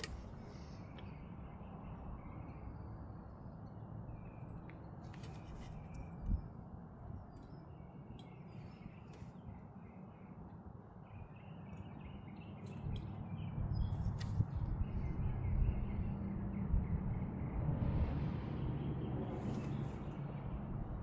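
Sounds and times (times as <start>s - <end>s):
small birds chirping: 7.2s - 17.3s.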